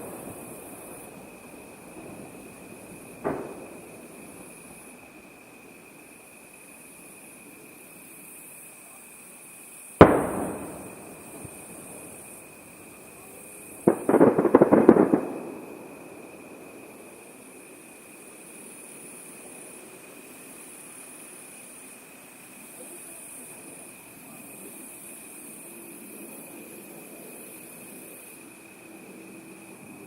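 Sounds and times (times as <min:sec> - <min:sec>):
firework shells booming: 0:00.0 - 0:07.8, 0:10.0 - 0:21.1
firework crackling reports: 0:00.0 - 0:30.0.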